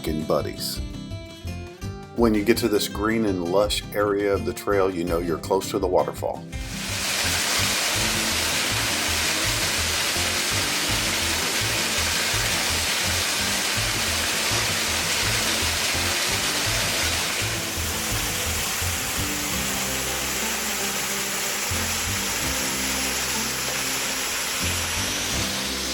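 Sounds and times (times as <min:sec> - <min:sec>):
background music with bass line: 0:00.0 - 0:25.9
waterfall rushing: 0:06.6 - 0:25.9.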